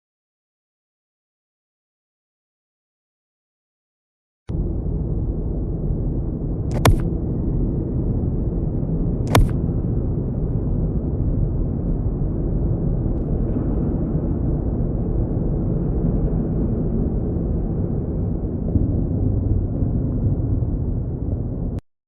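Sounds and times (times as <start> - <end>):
loud low rumble: 4.5 - 21.8.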